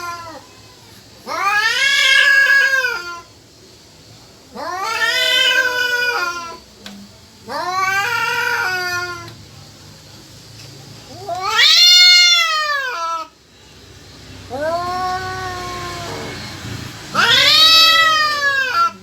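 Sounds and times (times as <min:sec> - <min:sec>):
cat yowling: 0:01.2 - 0:03.3, 0:04.5 - 0:06.6, 0:07.5 - 0:09.3, 0:11.2 - 0:13.4, 0:14.5 - 0:16.4, 0:17.1 - 0:19.0.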